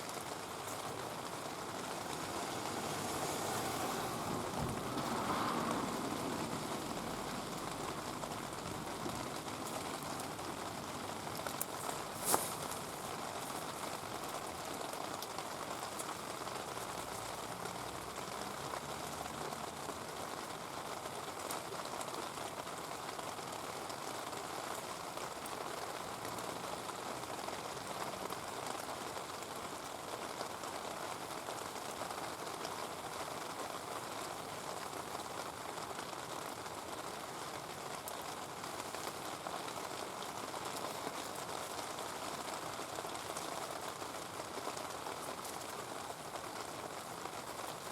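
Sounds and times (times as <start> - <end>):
heavy rain: 0.0 - 47.9.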